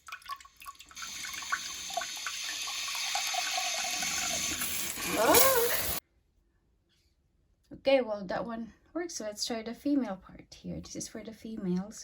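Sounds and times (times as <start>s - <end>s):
bidet nozzle spraying water: 1.0s - 6.0s.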